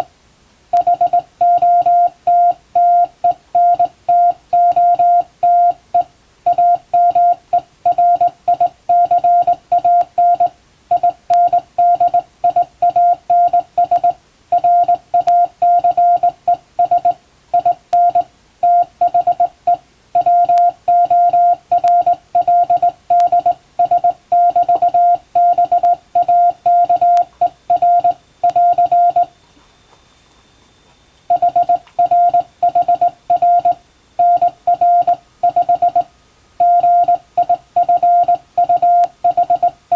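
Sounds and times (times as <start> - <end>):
morse code beeps: 0.8 - 29.6, 31.3 - 39.8.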